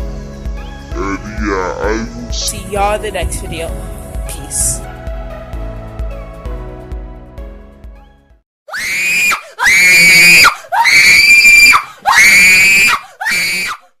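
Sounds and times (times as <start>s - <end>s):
background music: 0.0s - 8.4s
high-pitched screams: 8.7s - 13.9s.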